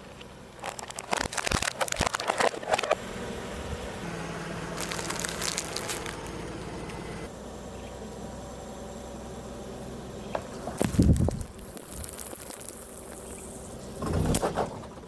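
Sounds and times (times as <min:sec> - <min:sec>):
object crunching under car: 0:00.6 - 0:03.0.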